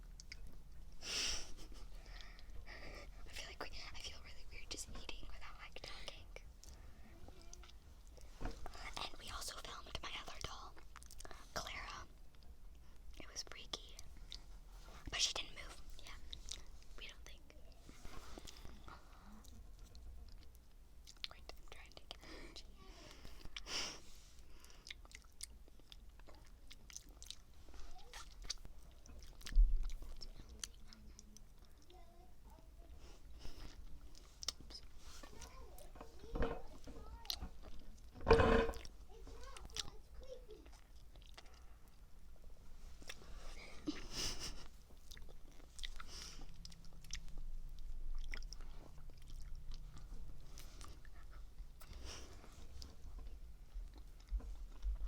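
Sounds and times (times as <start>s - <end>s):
chewing with mouth clicks: 0.0s - 0.8s, 17.7s - 21.7s, 24.6s - 32.0s, 39.5s - 42.0s, 43.8s - 55.0s.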